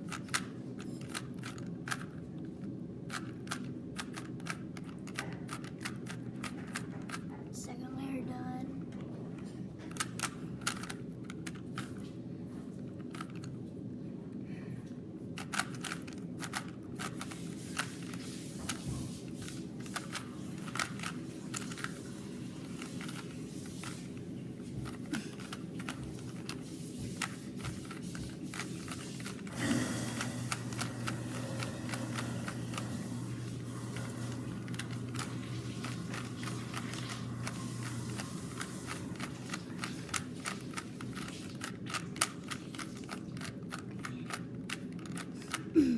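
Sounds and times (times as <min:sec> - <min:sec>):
steady low hum: 0:00.0 - 0:45.9
puzzle cube clicking: 0:15.4 - 0:17.2, 0:34.6 - 0:45.6.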